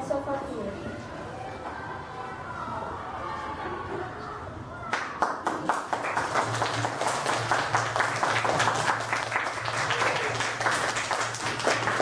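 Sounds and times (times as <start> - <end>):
audience applauding: 4.9 - 12.0.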